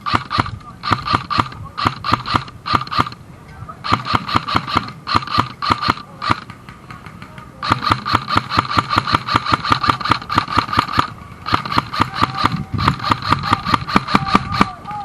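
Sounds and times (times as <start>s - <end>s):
airsoft gun firing bursts: 0.0s - 3.2s, 3.8s - 14.8s.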